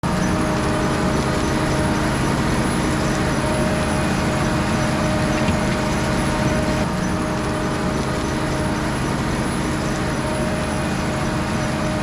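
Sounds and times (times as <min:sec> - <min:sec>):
constant machine tones: 0:00.0 - 0:12.0
harvesting machinery running: 0:00.0 - 0:12.0.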